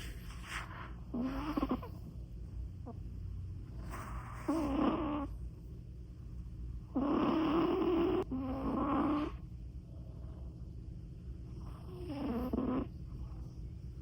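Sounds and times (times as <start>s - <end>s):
cat snoring: 0.0s - 2.0s, 3.8s - 5.4s, 6.9s - 10.5s, 11.6s - 13.4s.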